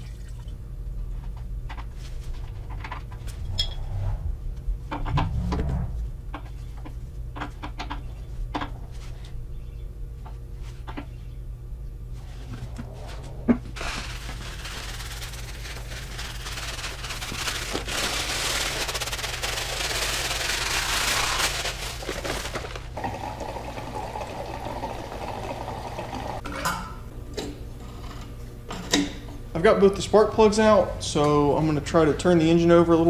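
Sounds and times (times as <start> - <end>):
steady low hum: 0.0 - 24.5
fuel pouring into tank: 13.8 - 26.4.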